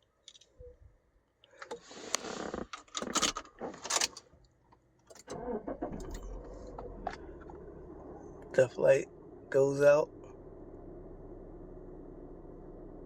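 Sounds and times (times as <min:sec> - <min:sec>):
car engine running hum: 0:05.4 - 0:13.0.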